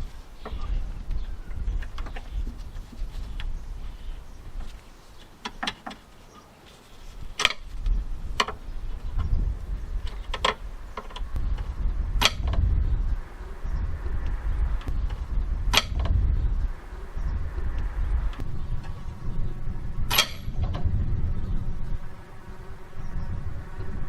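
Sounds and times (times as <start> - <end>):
sharp clicks and knocks: 5.4 - 6.1, 7.4 - 9.4, 10.0 - 12.8, 14.0 - 16.4, 20.1 - 20.9
low rumble: 7.6 - 24.0.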